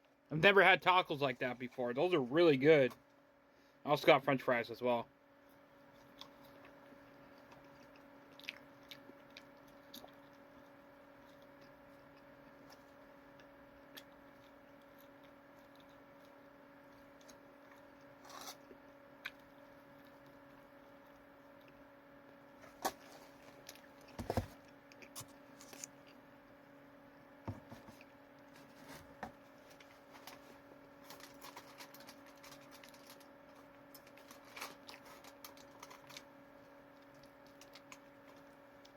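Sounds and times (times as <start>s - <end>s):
low electrical hum: 0.0s - 38.9s
person chewing and crunching: 5.8s - 26.6s, 29.7s - 38.9s.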